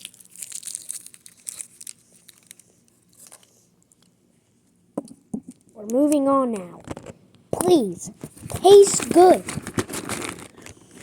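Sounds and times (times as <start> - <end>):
plastic wrapper crinkling: 0.0 - 4.1, 9.0 - 11.0.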